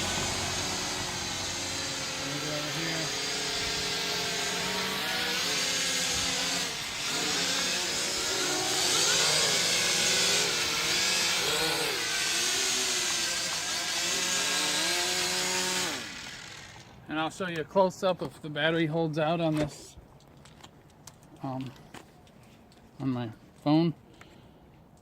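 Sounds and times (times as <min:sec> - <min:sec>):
drone propellers whining: 0:00.0 - 0:17.0.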